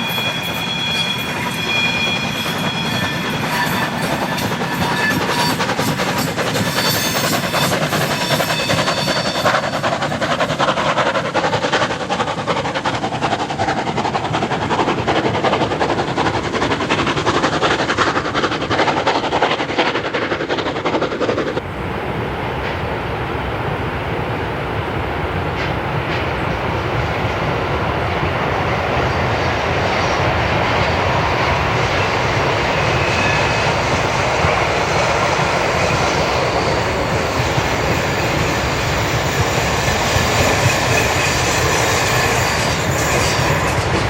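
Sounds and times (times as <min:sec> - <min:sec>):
high wheel squeal: 0:00.0 - 0:10.8, 0:31.4 - 0:44.0
train wheels clattering on rails: 0:00.0 - 0:21.7, 0:25.4 - 0:44.0.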